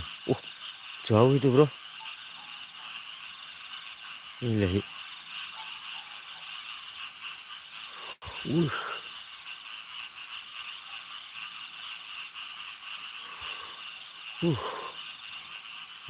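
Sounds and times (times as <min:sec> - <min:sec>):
night insects chorus: 0:00.0 - 0:16.0
man murmuring: 0:08.2 - 0:09.0, 0:14.4 - 0:15.0.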